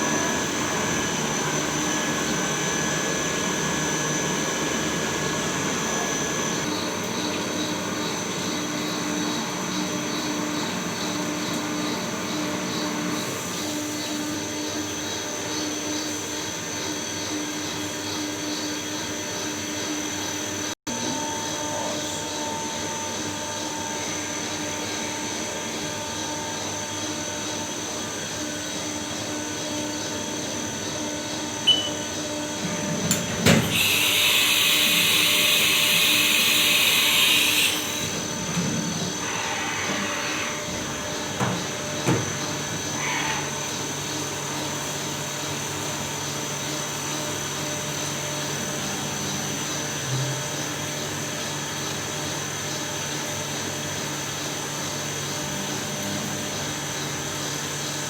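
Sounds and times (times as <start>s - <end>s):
machinery humming: 0.0s - 58.0s
compressed air hiss: 33.7s - 38.2s.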